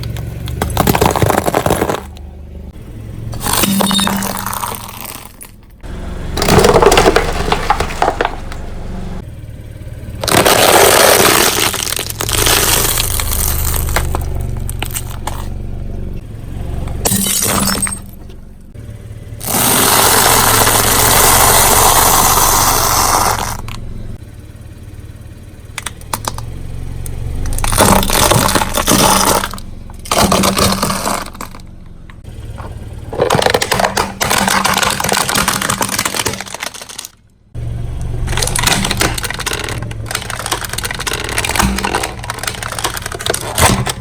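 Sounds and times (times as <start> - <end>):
tyre crushing objects: 0.0 - 2.3, 3.3 - 5.7, 6.4 - 8.9, 10.2 - 15.7, 19.4 - 23.8, 27.4 - 31.7, 32.4 - 37.2, 38.1 - 44.0
car engine hum: 0.0 - 44.0.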